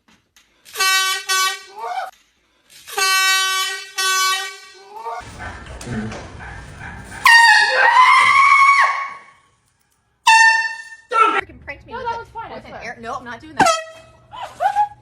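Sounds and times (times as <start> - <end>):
air horn blasts: 0.7 - 1.8, 2.9 - 4.8, 7.2 - 9.1, 10.2 - 11.4, 13.6 - 14.3
loud high-pitched cry: 7.5 - 9.4.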